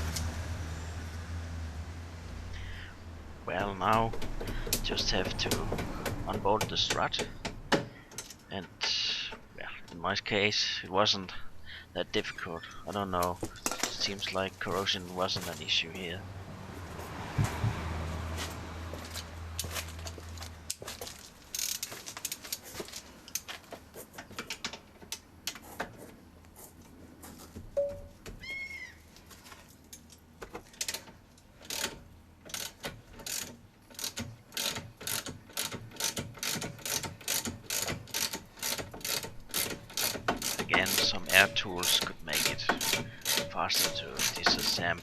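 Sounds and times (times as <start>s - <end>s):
ratchet wrench clicking: 21.5s - 21.9s, 31.6s - 44.9s.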